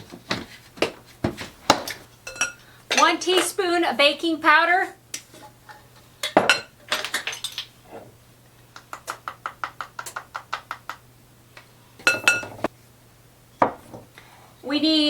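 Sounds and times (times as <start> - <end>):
utensil clinking against bowl: 2.2 - 3.5, 12.0 - 12.7.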